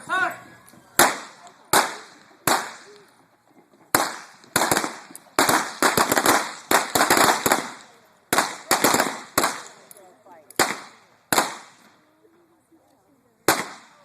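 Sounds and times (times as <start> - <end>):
blank gunshots: 1.0 - 2.9, 3.9 - 9.8, 13.5 - 14.0.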